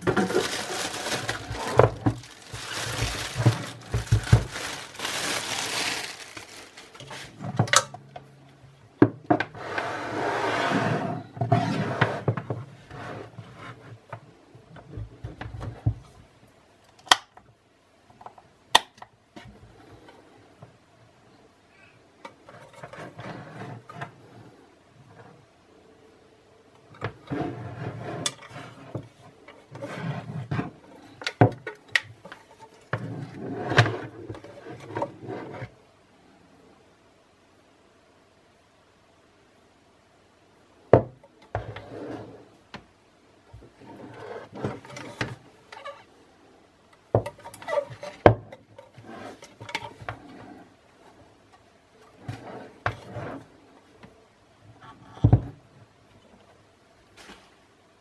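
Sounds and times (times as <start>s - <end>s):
handling packaging rubbing and knocks: 0.0s - 7.7s.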